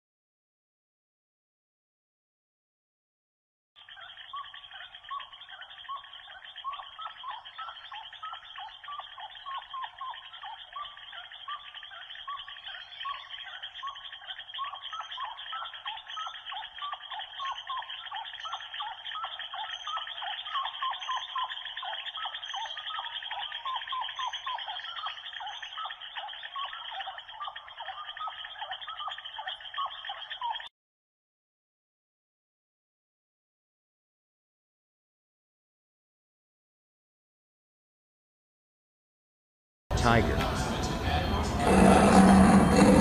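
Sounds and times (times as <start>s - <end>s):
chorus of animal calls: 3.8s - 30.7s, 40.6s - 43.0s.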